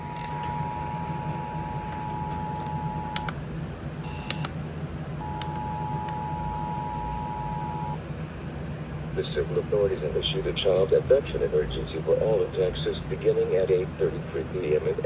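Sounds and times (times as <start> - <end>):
sharp clicks: 0.0 - 3.4, 4.1 - 4.6, 5.3 - 6.2.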